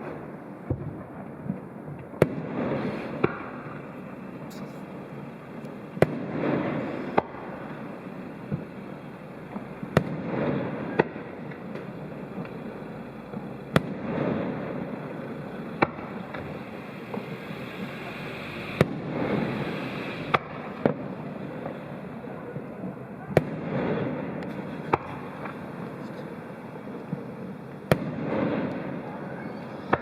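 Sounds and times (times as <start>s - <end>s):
small firework pops: 0.0s - 5.0s, 5.6s - 18.0s, 18.6s - 30.0s
rumbling after bangs: 0.6s - 26.0s
fireworks shells bursting: 0.8s - 22.2s.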